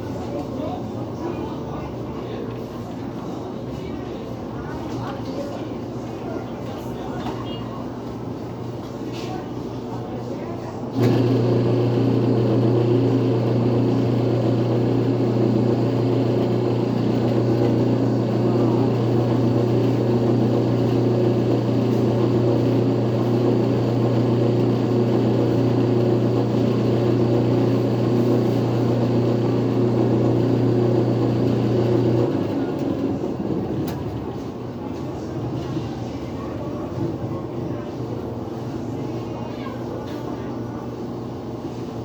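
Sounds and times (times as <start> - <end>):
electric motor humming: 11.0 - 32.8.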